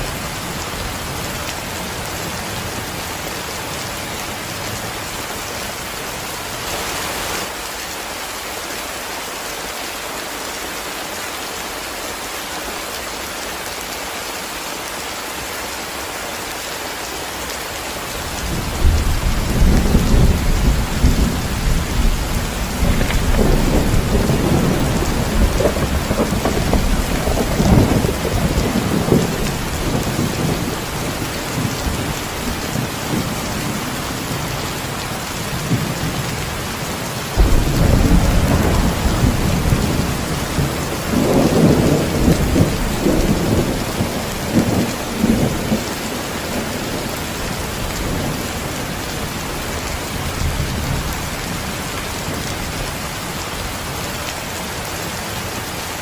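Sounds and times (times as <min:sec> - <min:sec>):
heavy rain: 0:00.0 - 0:56.0
rolling thunder: 0:18.3 - 0:34.4, 0:37.3 - 0:47.0
thunderclap: 0:18.8 - 0:33.8, 0:37.4 - 0:45.9.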